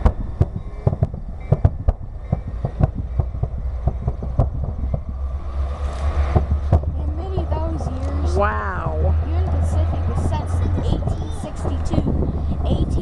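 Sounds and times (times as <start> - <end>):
fireworks bangs and pops: 0.0 - 5.2.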